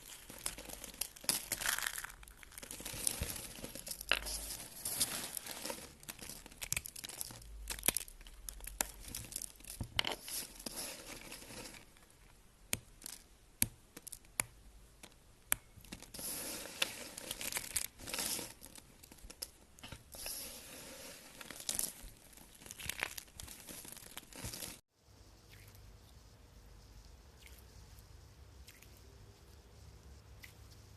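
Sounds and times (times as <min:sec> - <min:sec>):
crunchy material crackling: 0:00.0 - 0:12.1, 0:15.8 - 0:24.9
soft quiet sound: 0:00.0 - 0:30.9.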